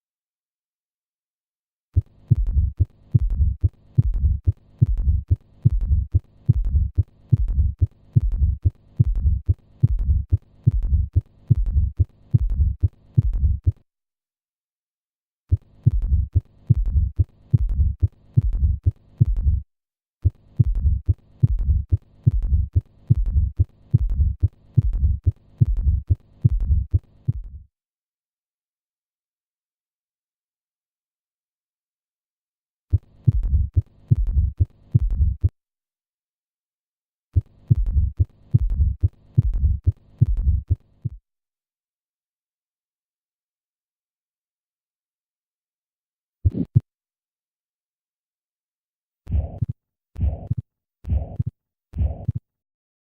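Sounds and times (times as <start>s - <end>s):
heartbeat thumps through stethoscope: 2.0s - 13.8s, 15.5s - 19.6s, 20.2s - 27.7s, 32.9s - 35.5s, 37.4s - 41.2s, 46.4s - 46.8s, 49.3s - 52.4s.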